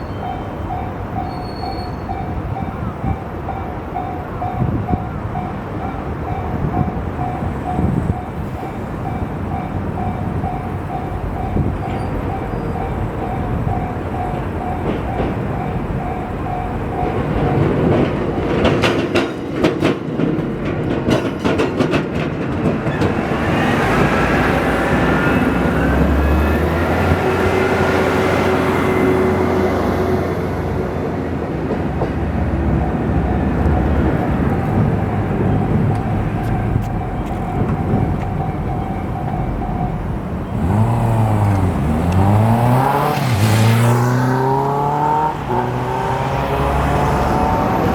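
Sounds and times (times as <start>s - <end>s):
train diesel engine running: 0.0s - 47.9s
wheels clicking over rail joints: 0.2s - 28.4s, 31.0s - 47.9s
road vehicles accelerating: 22.6s - 47.9s.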